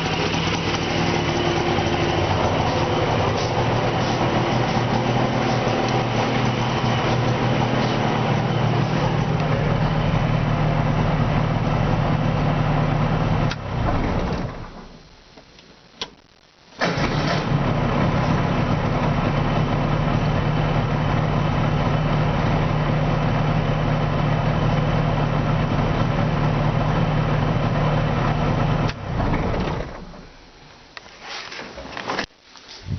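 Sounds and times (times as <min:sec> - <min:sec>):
two-stroke engine idling: 0:00.0 - 0:13.5, 0:17.8 - 0:29.0.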